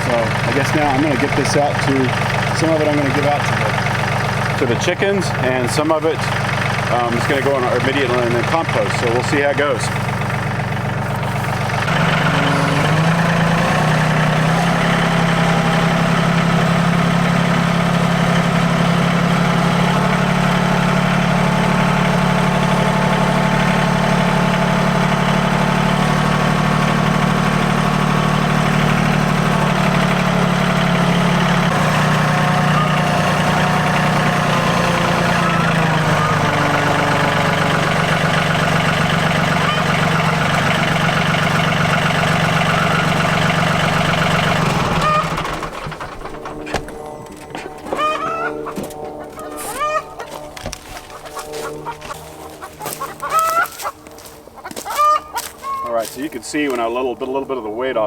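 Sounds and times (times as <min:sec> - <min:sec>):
tractor diesel engine running: 0:00.0 - 0:58.0.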